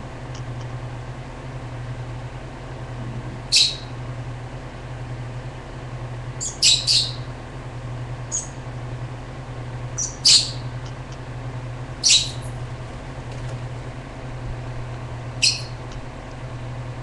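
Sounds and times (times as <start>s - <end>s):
steady low hum: 0.0s - 17.0s
lovebirds high calls: 3.5s - 4.1s, 6.4s - 7.4s, 8.3s - 8.6s, 10.0s - 10.8s, 12.0s - 12.6s, 15.3s - 15.9s.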